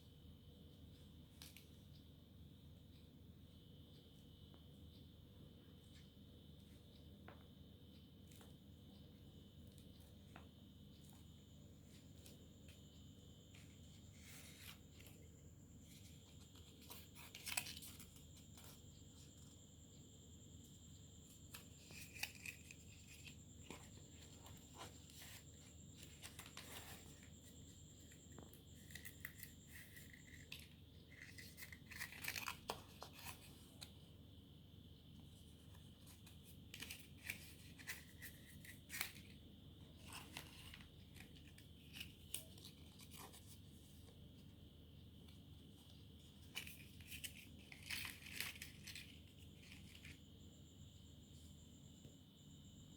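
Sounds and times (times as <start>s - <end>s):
paper and card crinkling: 13.5s - 19.4s, 21.4s - 33.9s, 35.8s - 44.2s, 45.3s - 50.2s.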